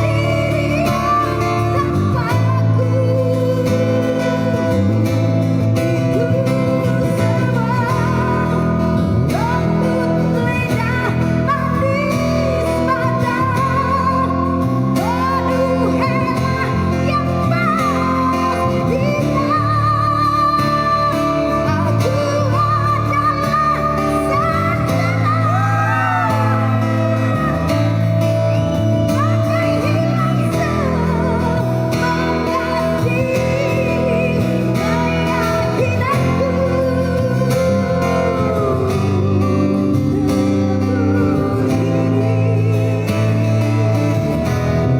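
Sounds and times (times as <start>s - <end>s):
amplified guitar: 0.0s - 44.9s
person singing with vibrato: 0.0s - 44.9s.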